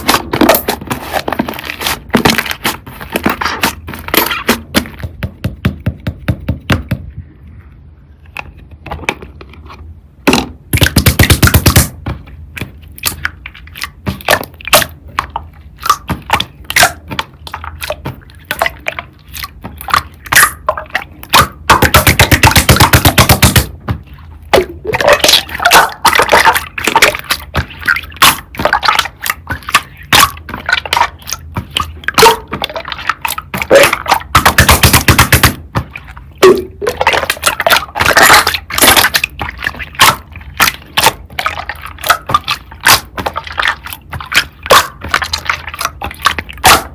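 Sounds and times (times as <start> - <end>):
wet slime squishing: 0.0 - 46.9.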